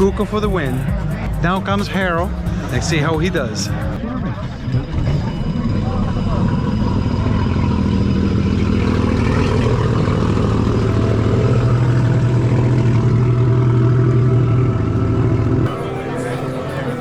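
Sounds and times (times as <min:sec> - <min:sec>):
jetski engine running: 0:00.0 - 0:17.0.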